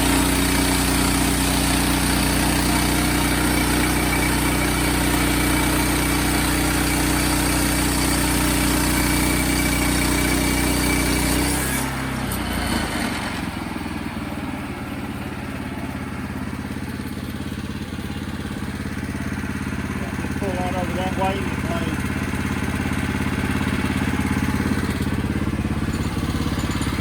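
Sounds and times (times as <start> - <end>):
sawmill engine running: 0.0 - 27.0.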